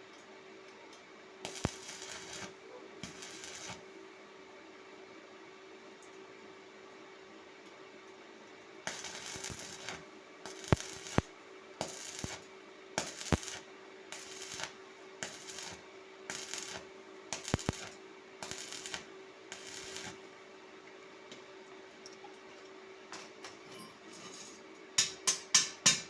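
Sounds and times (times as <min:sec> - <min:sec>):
welding arc crackling: 0:01.4 - 0:03.9, 0:08.9 - 0:20.3.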